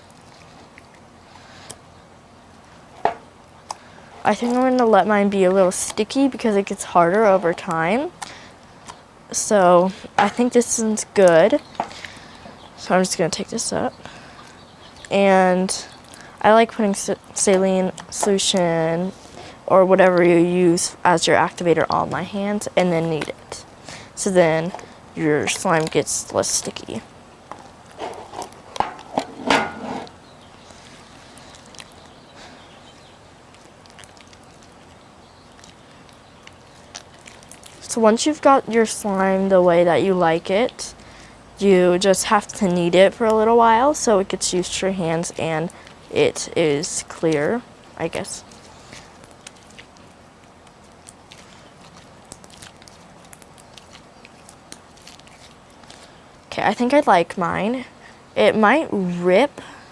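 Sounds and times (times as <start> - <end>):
slime squelching and popping: 33.5 - 37.9, 48.5 - 56.1
slime squelching when kneaded: 42.0 - 57.0.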